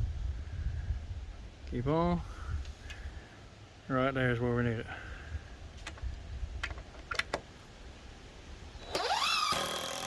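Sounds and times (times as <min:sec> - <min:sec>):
power tool motor whine: 0:08.8 - 0:10.0.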